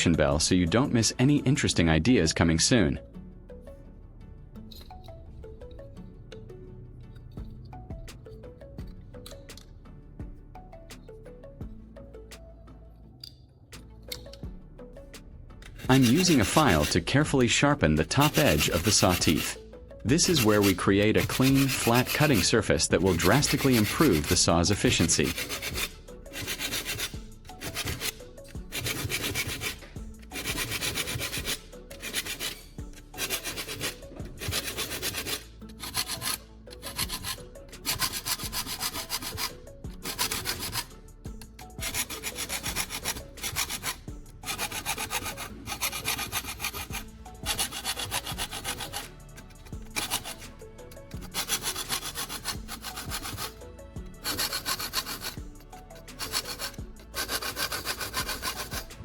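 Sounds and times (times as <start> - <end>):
metal file scraping saw teeth: 15.6 - 59.0.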